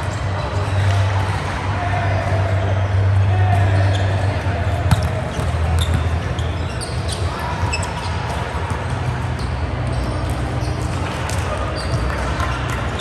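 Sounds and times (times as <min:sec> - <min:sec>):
low hum in large hall: 0:00.0 - 0:13.0
sneaker squeaks on court: 0:03.6 - 0:13.0
volleyball struck and bouncing: 0:04.6 - 0:06.2.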